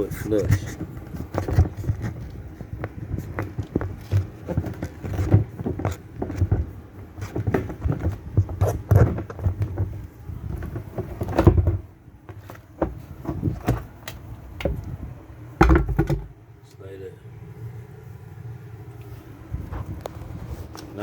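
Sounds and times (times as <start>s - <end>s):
washing machine parts knocking and clicking: 0.0s - 14.9s, 15.6s - 16.4s.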